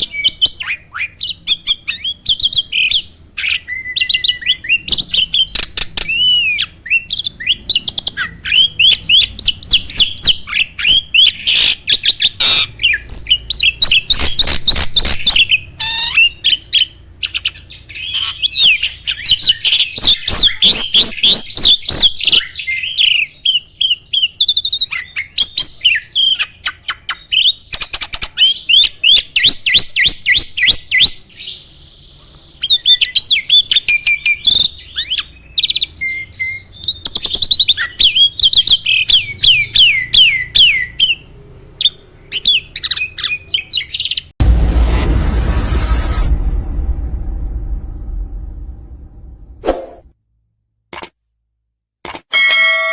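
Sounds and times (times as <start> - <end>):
starling singing: 32.7 - 44.3.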